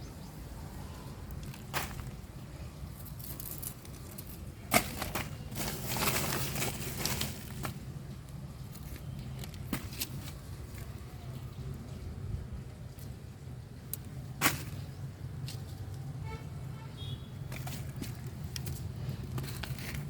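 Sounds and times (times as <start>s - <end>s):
rustling and crinkling: 1.3s - 12.0s, 13.8s - 16.1s, 17.4s - 20.0s.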